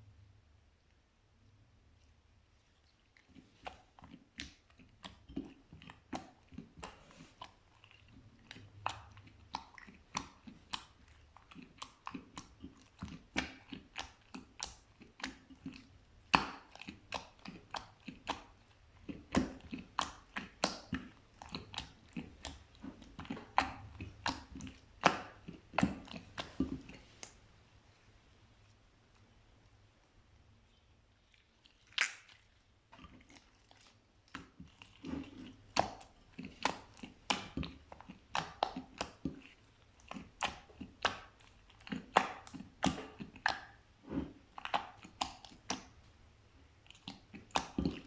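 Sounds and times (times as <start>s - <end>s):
slime squeezed by hand: 30.6s - 39.4s.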